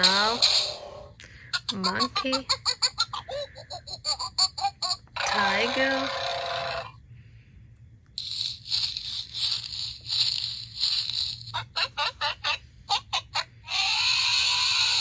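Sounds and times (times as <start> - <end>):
recorded animal sounds from speaker: 0.0 - 2.7, 5.2 - 7.0
long loud animal call: 13.6 - 15.0.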